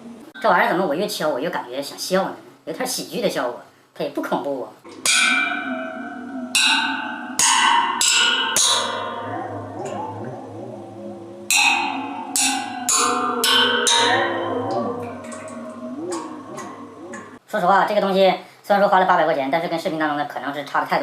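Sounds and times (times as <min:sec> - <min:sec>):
waterphone rods struck: 0:04.9 - 0:17.4
wavering metallic ringing tones: 0:04.9 - 0:17.4.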